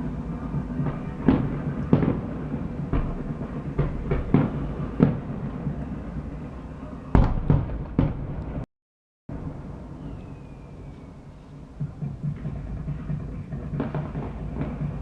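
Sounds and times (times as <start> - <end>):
fireworks exploding: 0.0 - 8.7, 11.8 - 15.0
low rumble: 0.0 - 8.7.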